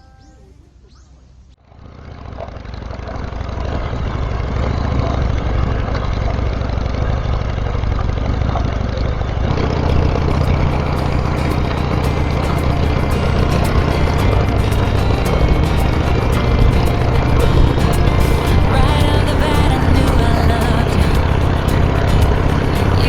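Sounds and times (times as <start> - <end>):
motorcycle engine rumbling: 5.2 - 23.0.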